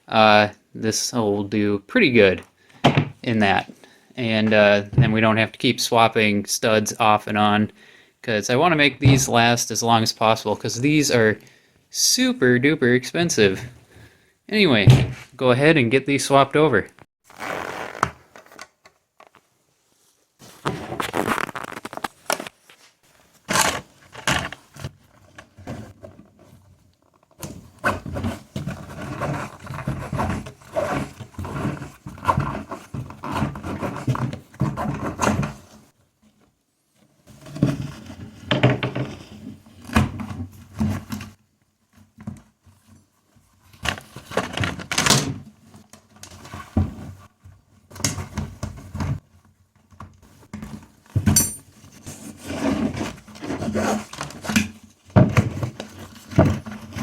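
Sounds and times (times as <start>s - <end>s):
rubber scraping against wheel rim: 17.2s - 18.6s, 27.6s - 36.0s, 51.9s - 54.5s.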